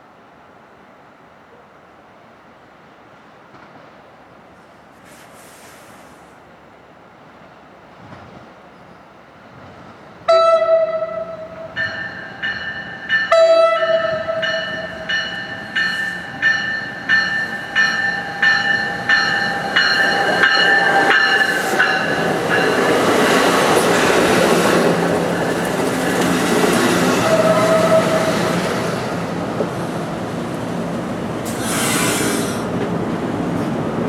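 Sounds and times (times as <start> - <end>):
train wheels rolling on rails: 7.2 - 34.0
train horn blast: 10.3 - 12.0, 13.3 - 15.1, 27.1 - 28.8
bell ringing: 11.8 - 23.0.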